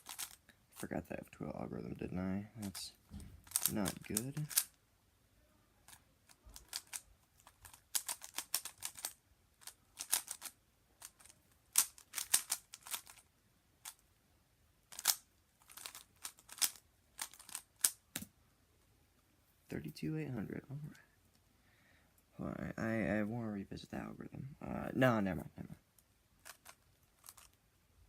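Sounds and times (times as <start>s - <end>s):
puzzle cube clicking: 0.0s - 0.5s, 3.4s - 4.8s, 5.8s - 14.0s, 14.9s - 18.3s, 26.4s - 27.6s.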